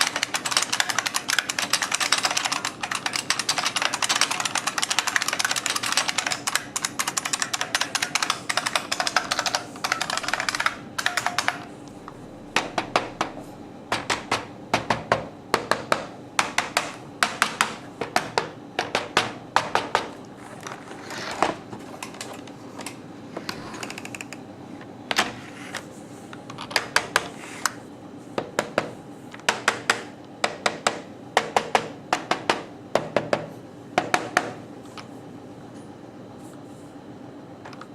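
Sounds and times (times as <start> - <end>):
keyboard keys clacking: 0.0 - 11.7.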